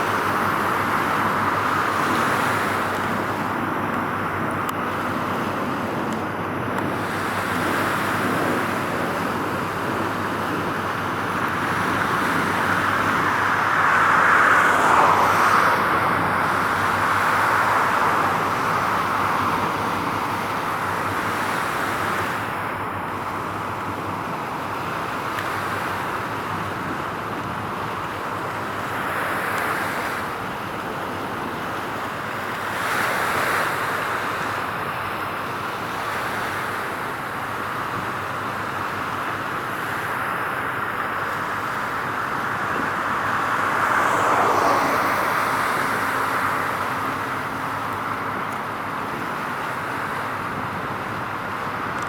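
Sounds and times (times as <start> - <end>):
vehicles passing: 0.0 - 27.4, 37.9 - 52.0
road traffic noise: 0.0 - 52.0.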